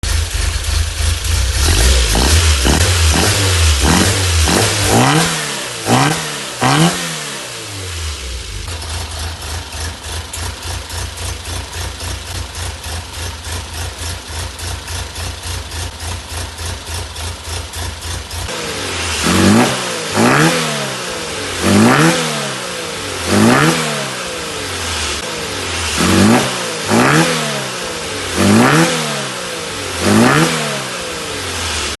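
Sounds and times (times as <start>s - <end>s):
car engine idling: 0.0s - 5.0s, 7.6s - 20.1s
car engine revving: 0.0s - 32.0s.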